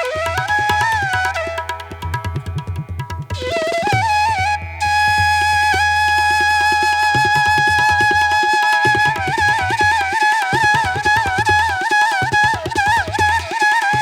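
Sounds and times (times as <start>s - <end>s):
flute melody: 0.0s - 2.3s, 3.3s - 14.0s.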